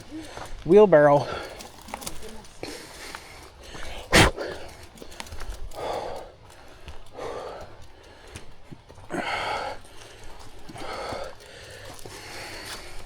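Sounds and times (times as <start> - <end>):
person breathing hard: 1.2 - 13.0.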